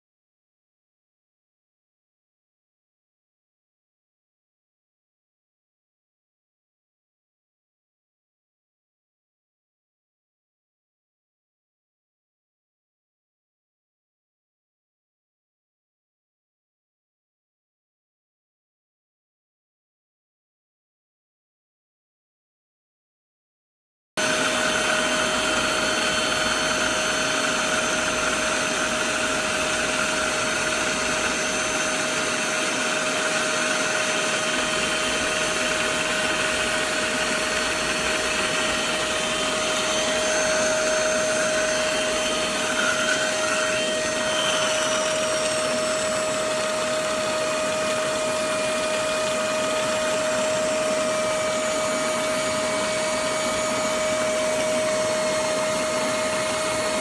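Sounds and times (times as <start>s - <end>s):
spot cleaner motor whining: 24.2s - 57.0s.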